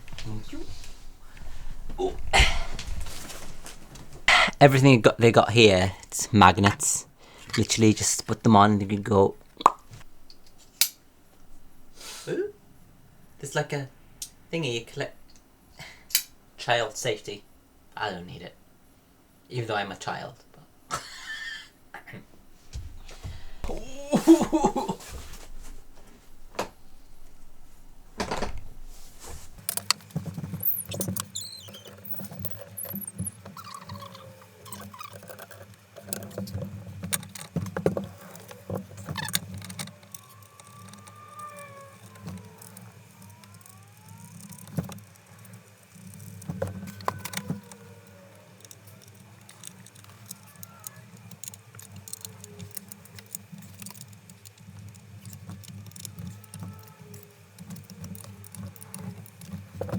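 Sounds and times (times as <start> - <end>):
chair parts clicking and rattling: 0.0 - 17.2, 22.2 - 59.9
steady low hum: 0.0 - 31.4.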